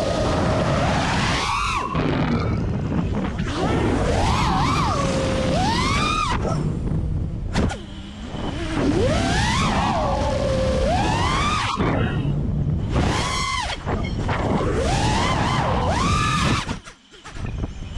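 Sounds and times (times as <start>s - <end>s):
wind rumble: 0.0s - 16.8s
quadcopter motors whining: 3.4s - 17.9s.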